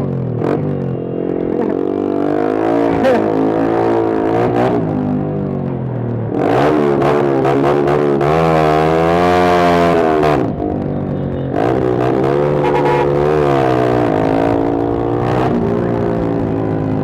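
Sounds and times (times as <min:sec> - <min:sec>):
motorcycle engine revving: 0:11.4 - 0:17.0.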